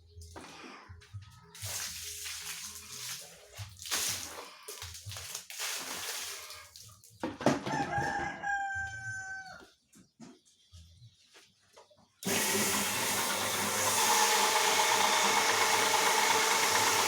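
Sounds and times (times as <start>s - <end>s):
rooster crowing: 7.7s - 9.7s.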